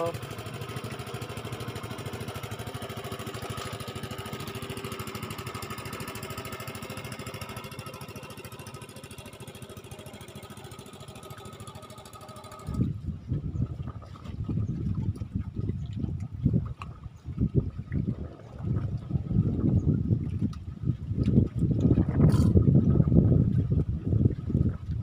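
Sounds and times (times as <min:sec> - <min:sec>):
small engine running: 0:00.0 - 0:12.9
low rumbles and bumps: 0:12.6 - 0:25.0.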